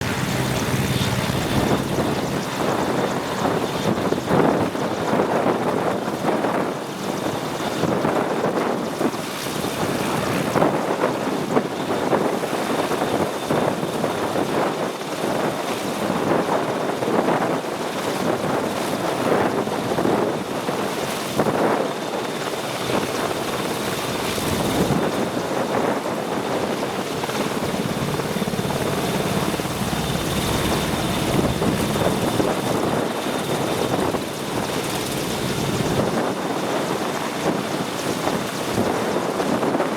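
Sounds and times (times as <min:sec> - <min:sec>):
faint high turbine whine: 0:00.0 - 0:05.1, 0:22.3 - 0:38.5
helicopter rotor and turbines: 0:00.0 - 0:39.9.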